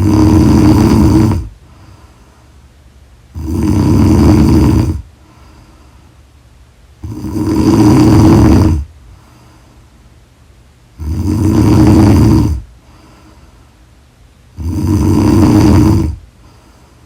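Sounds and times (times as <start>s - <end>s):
woman snoring loudly: 0.0s - 1.5s, 3.4s - 5.1s, 7.0s - 8.9s, 11.0s - 12.7s, 14.6s - 16.2s
quiet breaths: 0.0s - 17.0s.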